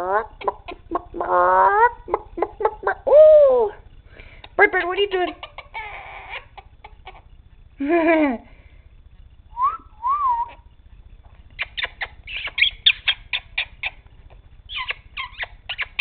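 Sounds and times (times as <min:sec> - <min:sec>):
parrot calling: 0:04.8 - 0:07.3, 0:10.1 - 0:10.7, 0:11.6 - 0:14.1, 0:14.7 - 0:16.0
parrot whistling: 0:09.6 - 0:10.7, 0:11.6 - 0:14.0, 0:14.7 - 0:16.0
parrot chirps and clicks: 0:11.6 - 0:14.1, 0:14.7 - 0:16.0.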